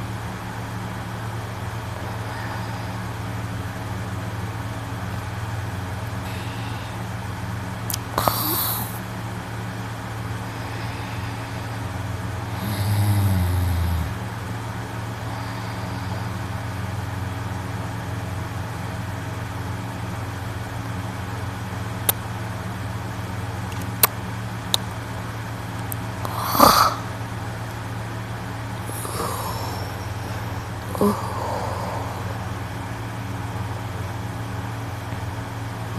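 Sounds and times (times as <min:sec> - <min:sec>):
steady low hum: 0:00.0 - 0:35.9
man snoring: 0:01.8 - 0:03.2, 0:06.2 - 0:07.1, 0:08.0 - 0:09.0, 0:10.3 - 0:16.7, 0:26.2 - 0:27.1, 0:28.8 - 0:32.6.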